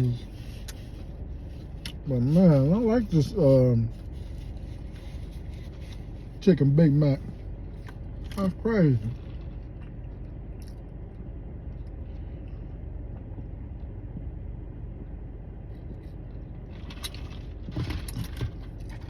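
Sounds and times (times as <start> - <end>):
rustling: 0.0 - 6.5, 7.2 - 10.3
car engine idling rumble: 0.0 - 19.0.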